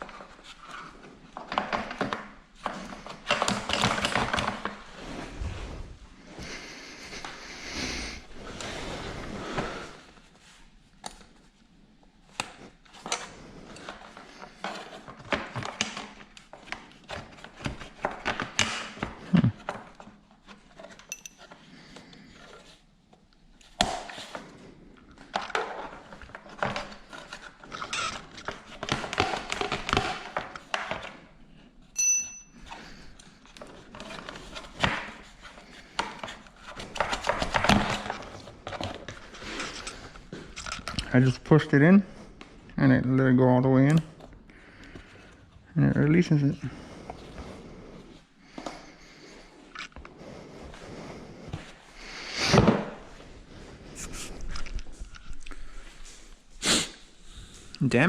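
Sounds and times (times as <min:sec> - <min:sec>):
tools knocking and scraping: 0:20.8 - 0:21.6.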